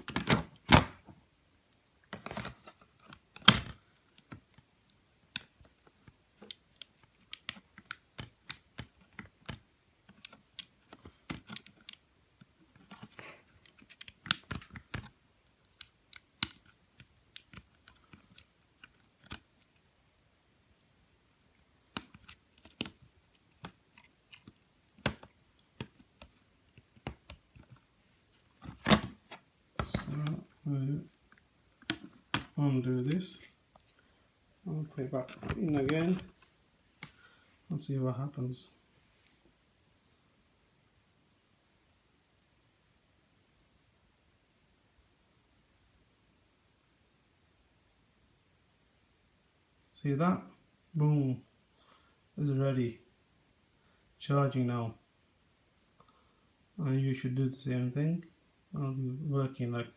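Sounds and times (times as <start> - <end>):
hands clicking and tapping plastic: 5.3 - 19.6, 21.9 - 27.8, 28.6 - 30.5, 31.3 - 33.9, 35.2 - 36.3.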